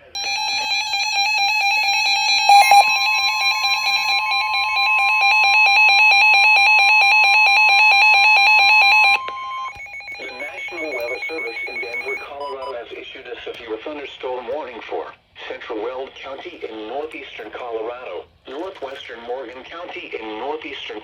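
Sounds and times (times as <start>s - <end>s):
steady warning alarm tone: 0.0s - 12.3s
rapid pulsing alert beep: 2.5s - 2.9s, 10.0s - 12.2s.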